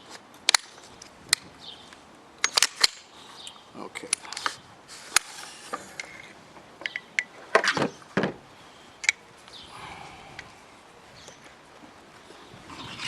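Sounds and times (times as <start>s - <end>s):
rifle parts clicking and knocking: 2.4s - 3.0s.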